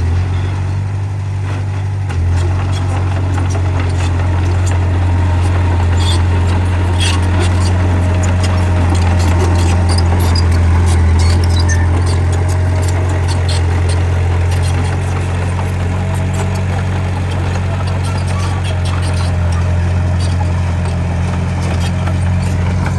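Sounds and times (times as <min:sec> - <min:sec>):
bulldozer diesel engine running: 0:00.0 - 0:22.9
small clicks and rattles: 0:02.1 - 0:22.9.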